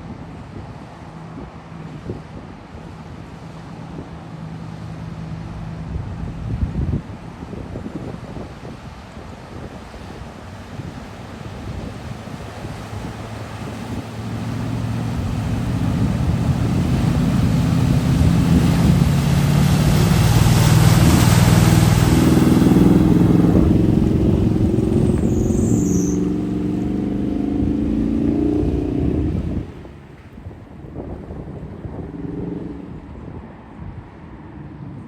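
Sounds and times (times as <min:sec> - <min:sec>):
water splashing: 0:09.8 - 0:30.6
vehicle engine: 0:11.1 - 0:33.6.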